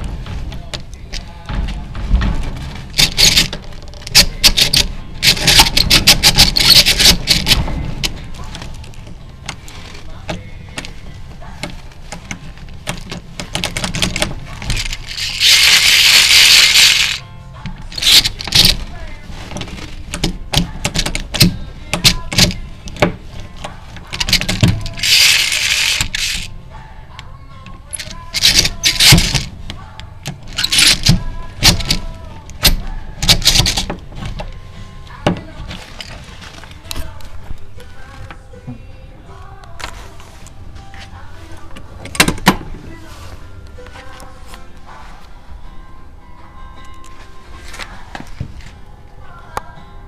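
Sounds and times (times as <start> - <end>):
hand drill metallic clicks: 3.0 - 7.7, 12.9 - 17.2, 17.9 - 18.8, 24.2 - 26.5, 27.9 - 29.5, 30.5 - 34.5
hand drill boring into wood: 14.7 - 17.2, 24.7 - 26.5.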